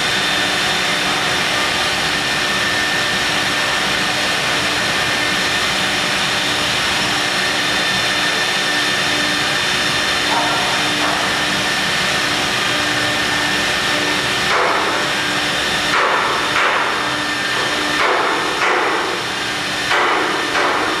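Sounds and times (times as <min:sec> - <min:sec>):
harsh stone cutting noise: 0:00.0 - 0:21.0
machine hum and whine: 0:00.0 - 0:21.0.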